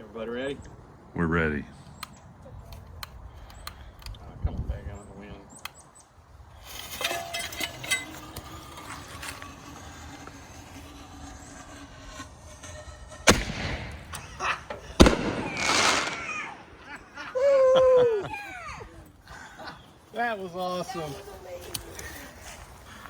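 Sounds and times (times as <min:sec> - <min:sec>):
firework hissing crackle: 0:08.4 - 0:17.2
firework bangs: 0:13.2 - 0:17.1.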